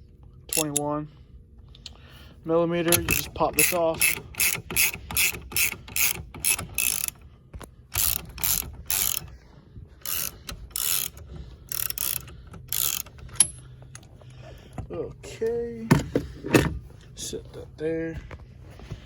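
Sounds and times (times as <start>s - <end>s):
ratchet wrench clicking: 0.5s - 0.9s, 2.9s - 7.3s, 7.9s - 9.3s, 10.0s - 13.7s.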